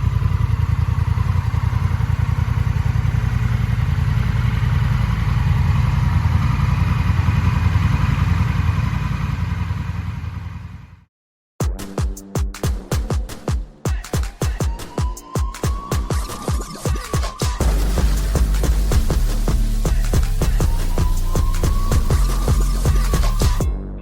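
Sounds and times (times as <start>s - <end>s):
motorcycle engine idling: 0.0s - 11.0s, 17.6s - 23.7s.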